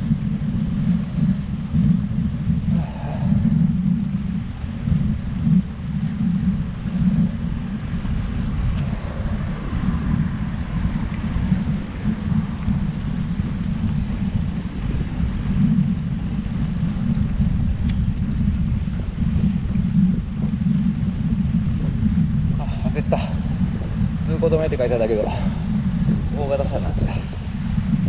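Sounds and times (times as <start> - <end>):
wind buffeting microphone: 0.0 - 28.0
faint ticks: 0.8 - 15.9, 16.5 - 21.1.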